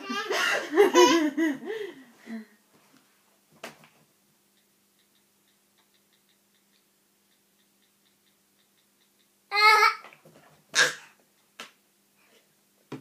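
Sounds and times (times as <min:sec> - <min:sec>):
faint light ticking: 0:04.3 - 0:09.5
baby squealing: 0:10.8 - 0:11.0.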